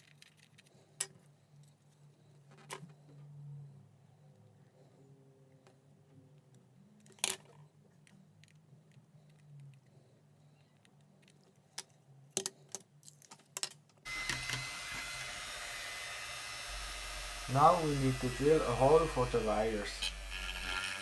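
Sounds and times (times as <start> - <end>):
small parts and tools clicking: 0.0 - 3.0, 6.4 - 15.3
small electric drill whining: 14.1 - 21.0.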